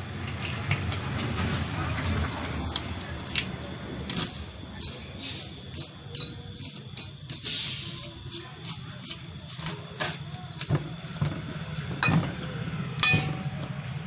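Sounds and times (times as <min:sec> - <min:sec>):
metal tool clicks and taps: 0:13.0 - 0:14.0.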